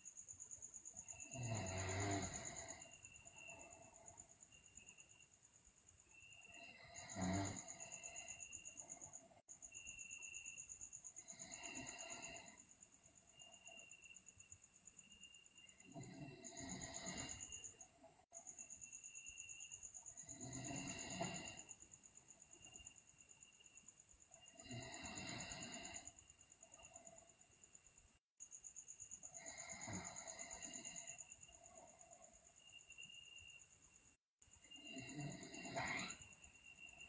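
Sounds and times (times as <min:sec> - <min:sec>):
cricket trill: 0:00.0 - 0:37.0
girl breathing with soft snore: 0:00.8 - 0:05.0, 0:06.1 - 0:14.2, 0:15.2 - 0:17.9, 0:19.1 - 0:23.0, 0:24.3 - 0:27.2, 0:29.2 - 0:33.4, 0:34.6 - 0:37.0.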